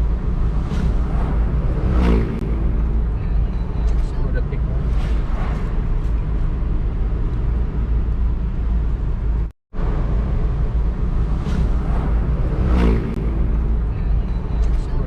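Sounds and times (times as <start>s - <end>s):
vehicle road noise rumble: 0.0s - 15.0s.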